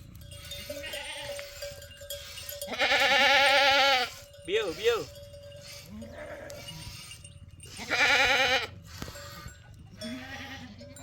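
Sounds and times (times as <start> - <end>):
livestock bleating: 0.5 - 1.6, 2.6 - 4.9, 5.7 - 7.1, 7.7 - 11.0.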